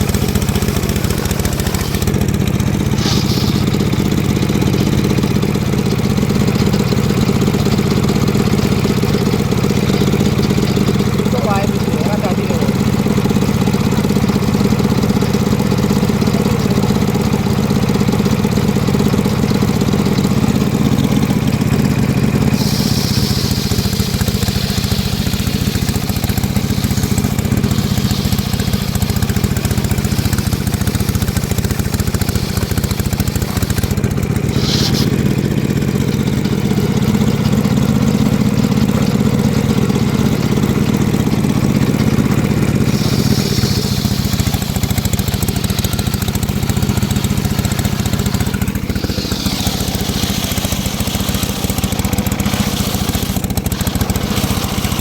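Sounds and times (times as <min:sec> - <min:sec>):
sawmill engine running: 0:00.0 - 0:55.0
high hiss: 0:02.9 - 0:04.2, 0:22.5 - 0:35.3, 0:42.8 - 0:55.0.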